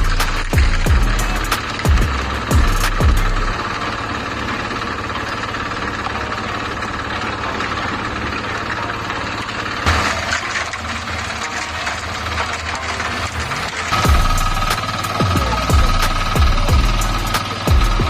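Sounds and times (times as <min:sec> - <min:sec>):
concrete mixer engine running: 0:00.0 - 0:18.0
loud clatter: 0:00.0 - 0:18.0.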